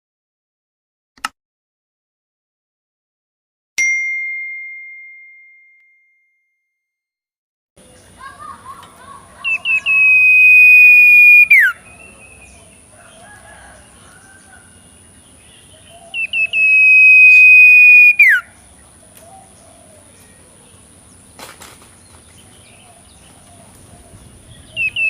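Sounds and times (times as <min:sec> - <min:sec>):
pet bird calling: 0:08.2 - 0:12.8, 0:15.7 - 0:20.2, 0:22.7 - 0:25.0.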